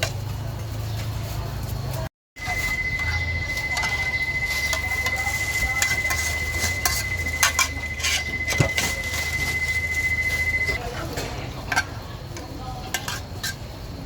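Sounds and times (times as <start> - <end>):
low hum: 2.4 - 10.8
thin high-pitched tone: 2.4 - 11.0
metal utensils and bowls clinking: 2.4 - 13.7.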